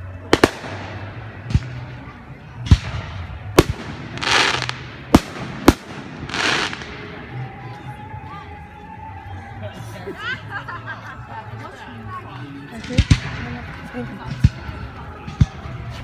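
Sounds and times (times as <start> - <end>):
firework shells bursting: 2.7 - 7.0
crackling hiss: 3.6 - 7.2.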